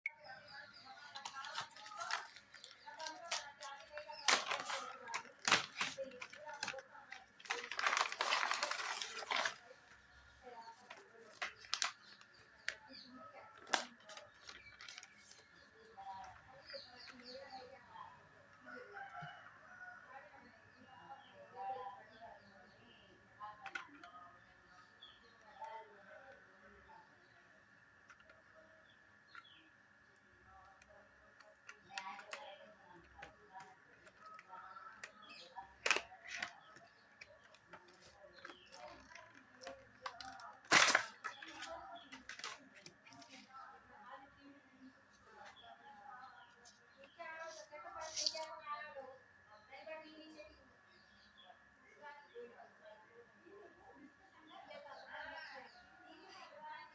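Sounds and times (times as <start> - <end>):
birds chirping: 0.0 - 56.6
pens and packaging clicking: 1.0 - 10.0, 10.8 - 12.8, 13.5 - 15.5, 30.7 - 43.5.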